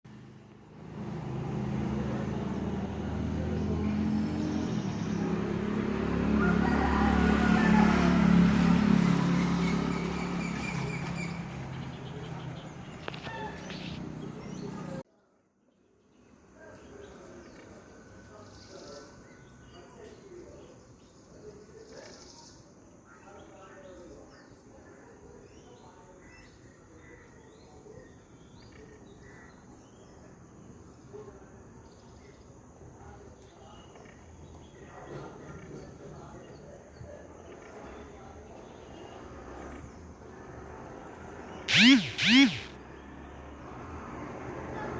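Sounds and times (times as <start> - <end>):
vehicle engine running: 41.7 - 42.7.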